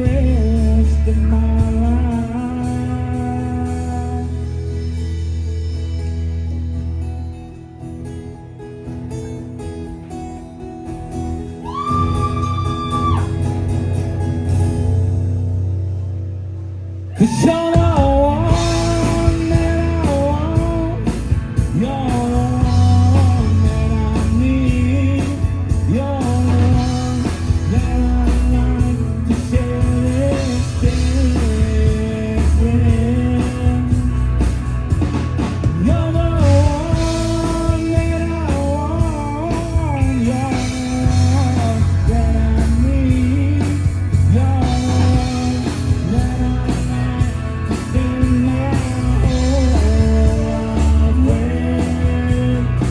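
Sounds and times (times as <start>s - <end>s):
person singing: 0.0s - 4.8s, 17.1s - 34.4s, 35.6s - 52.9s
drums: 0.0s - 52.9s
electric guitar: 0.0s - 52.9s
heavy bass: 0.0s - 52.9s.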